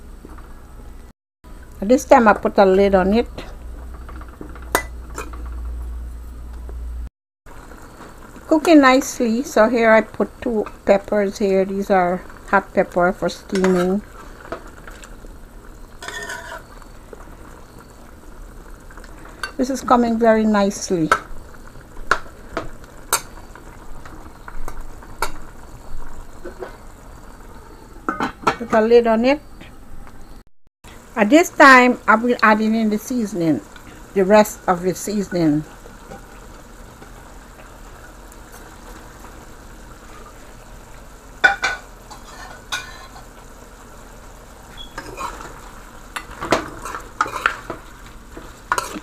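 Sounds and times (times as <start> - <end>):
food sizzling in pot: 1.5 - 29.6, 30.2 - 49.0
stirring: 46.4 - 49.0
utensil clanking against pot: 48.7 - 49.0.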